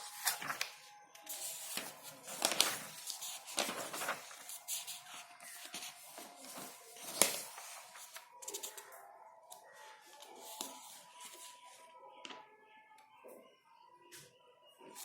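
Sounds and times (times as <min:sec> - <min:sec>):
scratching and rustling handling: 0:01.3 - 0:08.9.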